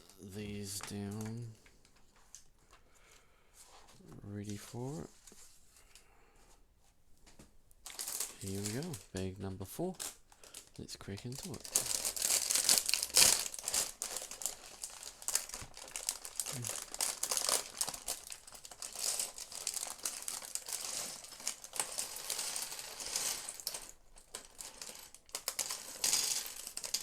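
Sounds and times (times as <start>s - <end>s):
plastic bag tearing and crinkling: 7.8s - 9.2s, 9.9s - 27.0s
small plastic pieces rattling: 7.8s - 9.2s, 10.0s - 27.0s.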